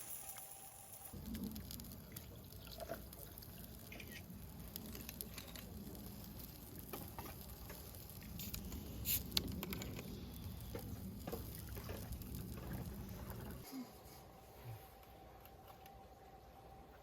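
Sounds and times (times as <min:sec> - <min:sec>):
faint crackling and clicks: 0:01.1 - 0:13.6
low steady rumble: 0:01.1 - 0:17.0.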